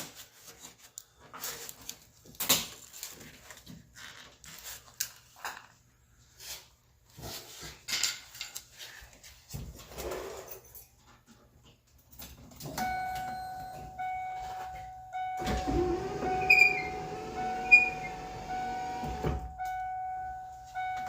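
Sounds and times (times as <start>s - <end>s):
steady high-pitched tone: 12.8s - 21.0s
power window motor running: 15.4s - 19.7s.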